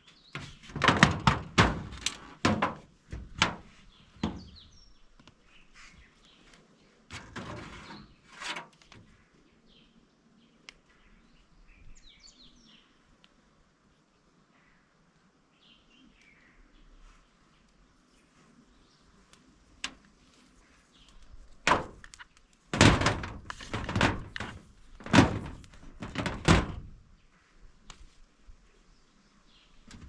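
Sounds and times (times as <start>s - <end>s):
loud knocks: 0.4s - 4.5s, 21.7s - 22.0s, 22.8s - 27.0s
short scraping rustles: 7.1s - 9.0s
faint bird chirps: 13.9s - 19.3s.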